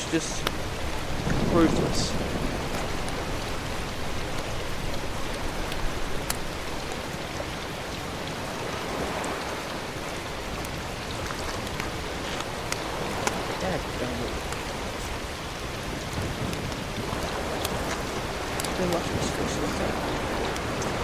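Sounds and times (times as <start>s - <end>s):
steady outdoor rushing noise: 0.0s - 21.0s
faint ticks: 4.3s - 7.0s, 10.6s - 15.2s, 16.2s - 21.0s.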